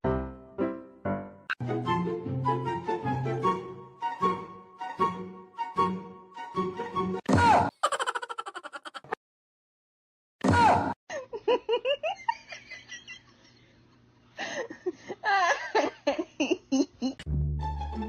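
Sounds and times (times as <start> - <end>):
person laughing: 7.7 - 9.2, 11.1 - 13.3, 14.4 - 17.2.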